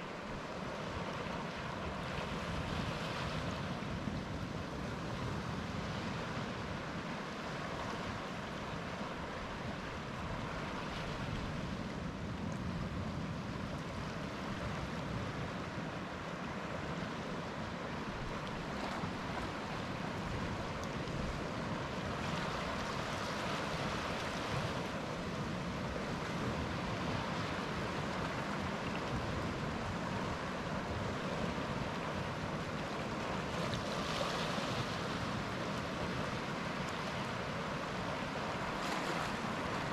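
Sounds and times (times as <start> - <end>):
surf washing on shore: 0.0 - 39.9.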